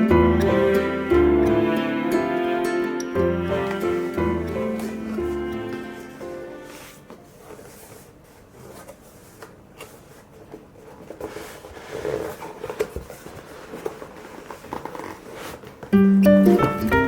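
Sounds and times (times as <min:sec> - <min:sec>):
ukulele music: 0:00.0 - 0:07.1, 0:15.9 - 0:17.0.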